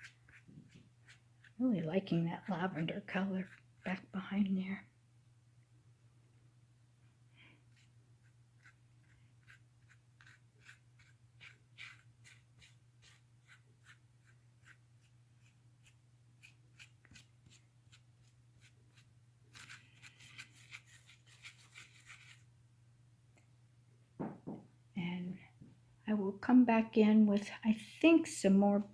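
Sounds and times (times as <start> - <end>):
paintbrush scrubbing on canvas: 0.0 - 4.1, 7.7 - 22.5
faint steady hum: 0.0 - 28.9.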